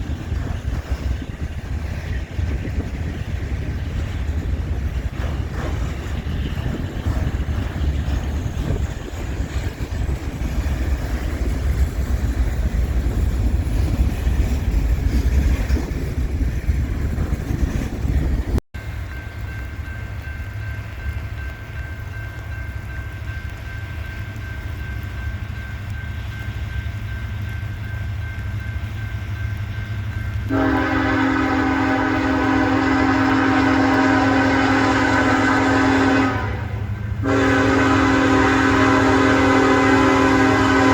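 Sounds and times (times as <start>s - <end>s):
diesel freight train rumbling: 0.0s - 40.9s
locomotive air horn chord: 30.5s - 40.9s.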